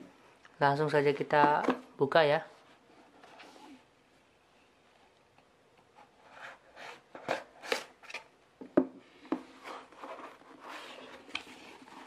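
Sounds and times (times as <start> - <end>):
packaging rustling and scraping: 9.5 - 12.0.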